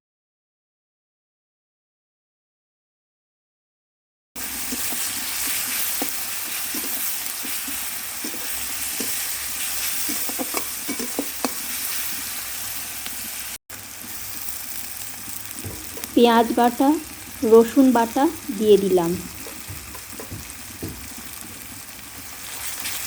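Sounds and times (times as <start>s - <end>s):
onions sizzling in oil: 4.4s - 23.0s
spatula scraping a pan: 4.5s - 12.7s, 19.3s - 23.0s.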